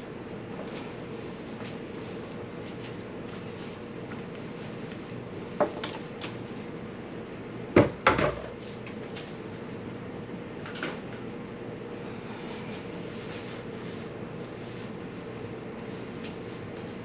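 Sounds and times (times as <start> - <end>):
steady background hum: 0.0 - 17.0.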